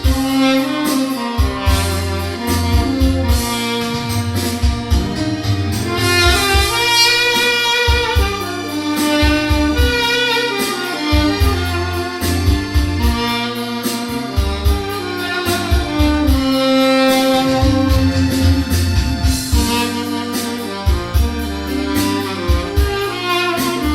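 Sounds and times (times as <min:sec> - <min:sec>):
bass line and steady beat: 0:00.0 - 0:23.9
tenor saxophone melody: 0:00.0 - 0:23.9.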